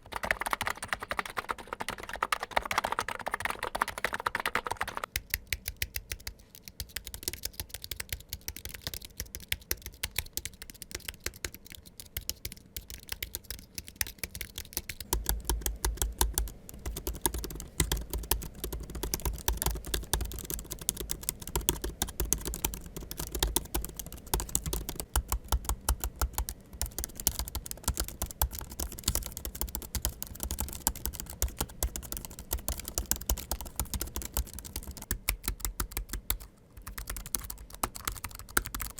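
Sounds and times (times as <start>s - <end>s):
fast typing on keyboard: 0.0s - 38.9s.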